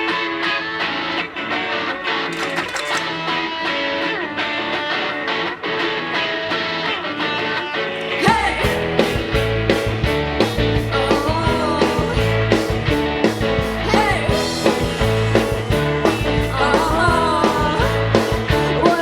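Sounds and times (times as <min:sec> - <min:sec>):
drums: 0:00.0 - 0:19.0
electric guitar riff: 0:00.0 - 0:19.0
bass guitar: 0:06.4 - 0:19.0.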